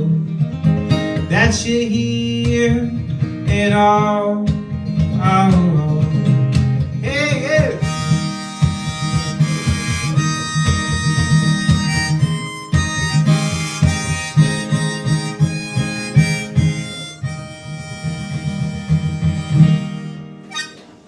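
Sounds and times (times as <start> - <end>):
strummed acoustic guitar: 0.0 - 21.0
harmonica playing: 7.7 - 21.0.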